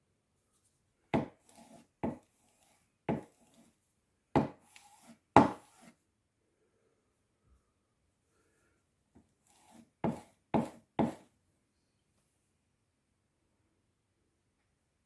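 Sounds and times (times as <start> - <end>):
chisel knocking into wood: 1.2 - 1.4, 3.1 - 3.3, 4.4 - 4.6, 5.4 - 5.8, 10.1 - 11.2
chisel scraping wood: 1.2 - 3.7, 4.4 - 6.0, 9.4 - 11.2.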